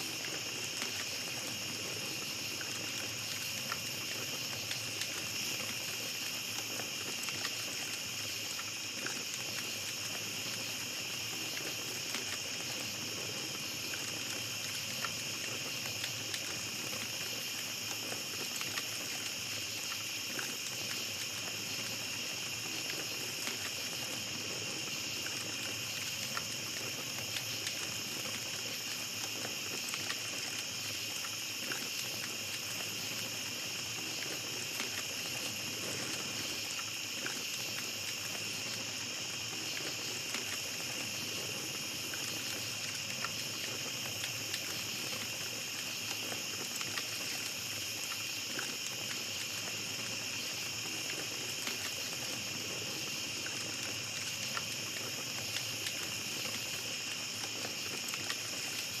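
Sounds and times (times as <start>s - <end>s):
campfire crackling: 0.0s - 59.0s
insects chorus: 0.0s - 59.0s.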